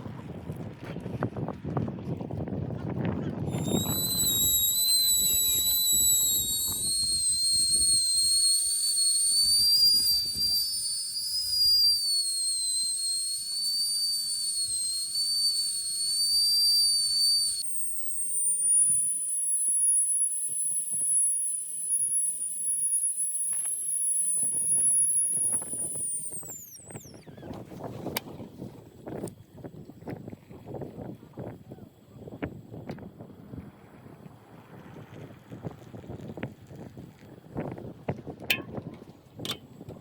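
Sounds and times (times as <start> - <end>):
high wavering whistle: 3.5 - 28.4, 38.5 - 40.0.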